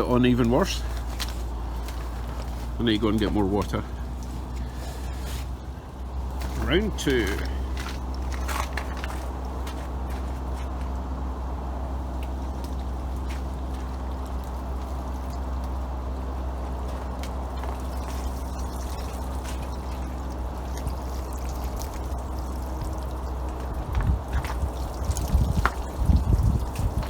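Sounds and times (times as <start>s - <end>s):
water pouring onto tarpaulin: 6.2s - 10.8s, 12.3s - 27.0s.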